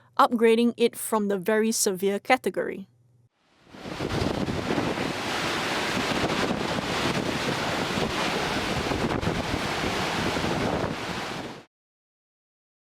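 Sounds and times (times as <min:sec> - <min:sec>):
wind buffeting microphone: 0:03.7 - 0:11.6
waves crashing: 0:03.7 - 0:11.7.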